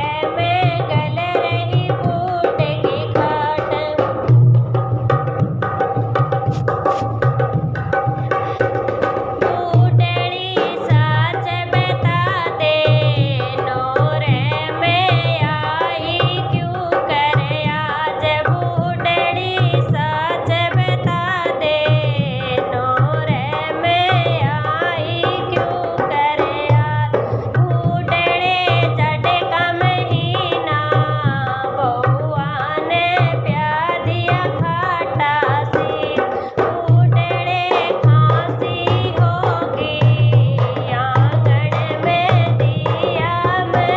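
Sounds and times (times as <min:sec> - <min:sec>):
hand drums beating: 0:00.0 - 0:43.9.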